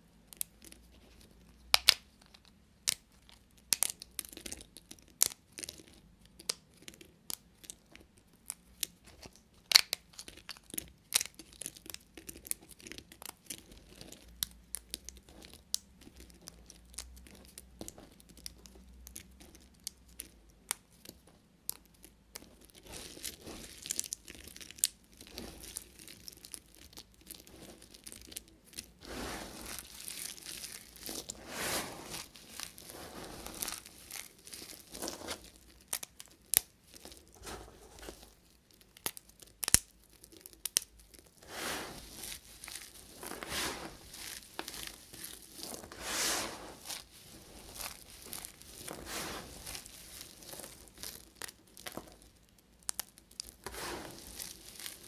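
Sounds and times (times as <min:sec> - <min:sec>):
knife cutting dry soap: 0:28.8 - 0:36.1, 0:40.7 - 0:52.2, 0:53.4 - 0:55.0.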